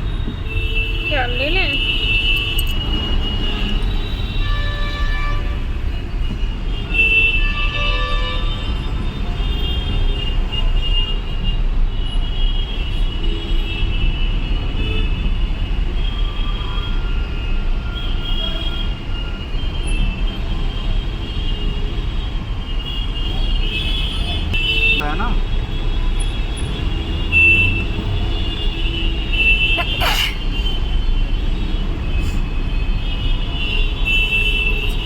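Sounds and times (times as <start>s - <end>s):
car horns honking: 0.0s - 8.8s, 25.9s - 30.9s
low rumble of street traffic: 0.0s - 35.0s.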